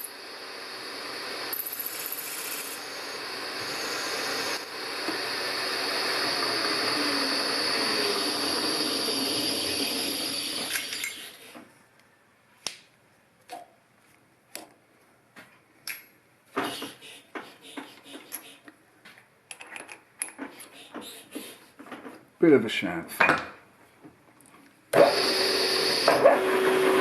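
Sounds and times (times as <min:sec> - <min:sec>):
drill boring into metal: 0:00.0 - 0:11.4, 0:25.0 - 0:27.0.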